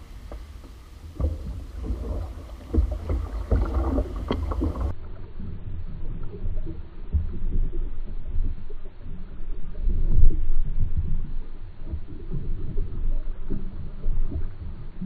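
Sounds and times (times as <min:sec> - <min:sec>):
hull knocking on waves: 0:00.0 - 0:05.0
wind rumble on microphone: 0:00.0 - 0:15.0.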